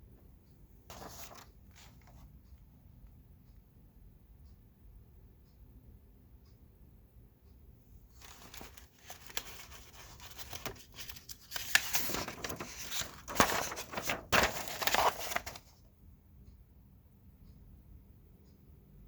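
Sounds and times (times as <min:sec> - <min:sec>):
packaging crinkling and rustling: 0:08.2 - 0:15.7.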